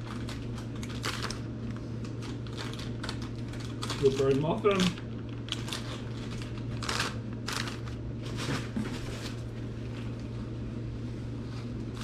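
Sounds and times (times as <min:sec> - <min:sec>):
food pouches crinkling: 0:00.0 - 0:08.7
steady low hum: 0:00.0 - 0:12.0.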